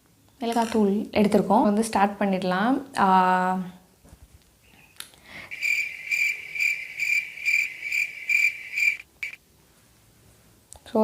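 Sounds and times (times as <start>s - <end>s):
cricket-like chirping trill: 5.4s - 9.4s.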